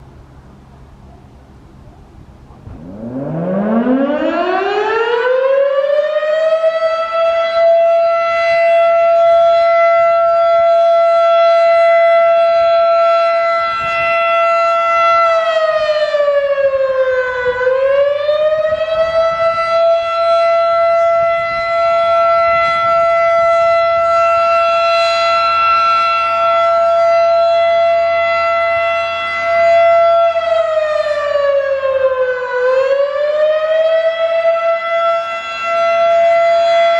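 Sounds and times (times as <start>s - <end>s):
fire siren wailing: 2.5s - 36.9s.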